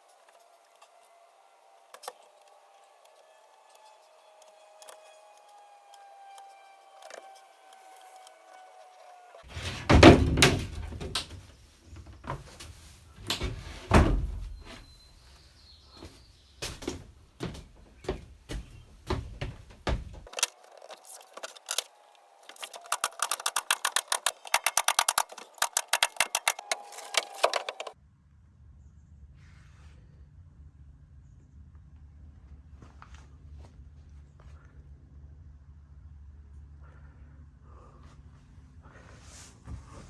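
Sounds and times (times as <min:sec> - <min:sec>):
irregular knocks and thuds: 0:09.5 - 0:15.4, 0:16.0 - 0:20.3
fast even clicking: 0:22.5 - 0:28.0.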